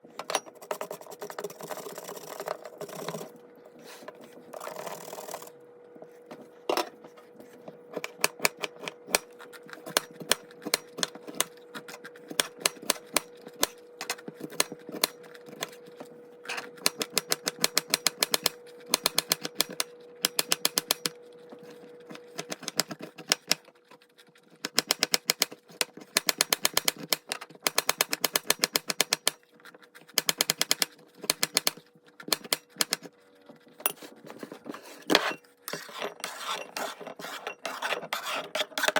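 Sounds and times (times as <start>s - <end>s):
steady hum: 0.0s - 23.0s.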